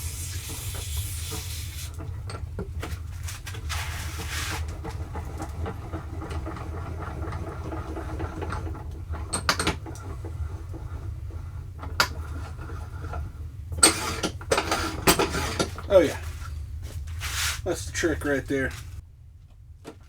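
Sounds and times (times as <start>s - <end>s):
metal vise clicks and scrapes: 11.8s - 15.9s.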